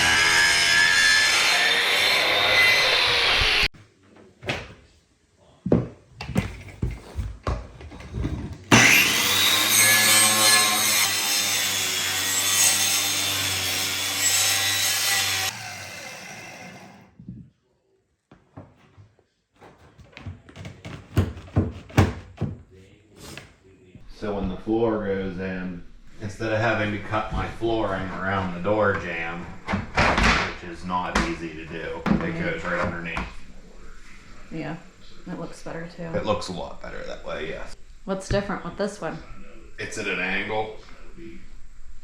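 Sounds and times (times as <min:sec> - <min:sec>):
power saw cutting wood: 0:00.0 - 0:03.7, 0:08.7 - 0:17.1.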